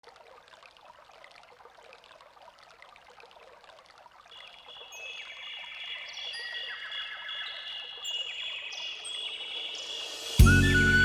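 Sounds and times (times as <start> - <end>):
high sustained instrumental tones: 6.0 - 11.0.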